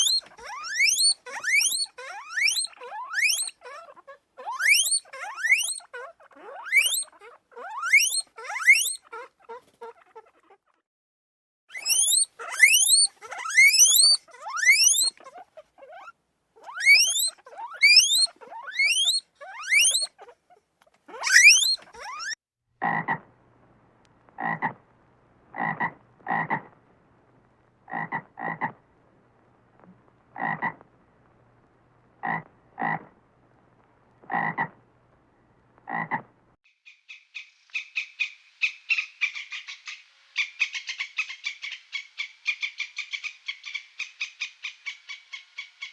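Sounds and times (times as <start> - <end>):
high upward-sweeping squeaks: 0.0 - 3.8, 4.4 - 9.1, 11.7 - 20.2, 21.1 - 22.4
frog croaking: 22.8 - 23.3, 24.4 - 24.8, 25.5 - 26.8, 27.9 - 28.8, 30.3 - 30.8, 32.2 - 33.2, 34.2 - 34.8, 35.9 - 36.3.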